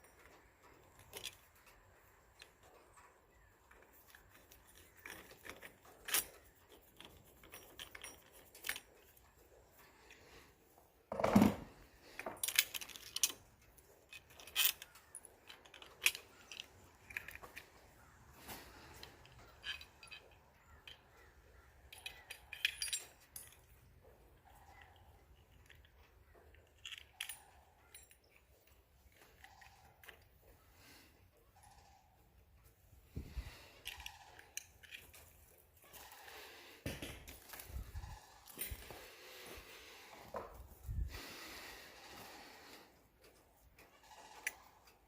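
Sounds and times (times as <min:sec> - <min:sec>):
metal lock parts clinking: 0:00.0 - 0:10.4, 0:11.1 - 0:39.4, 0:43.2 - 0:45.0.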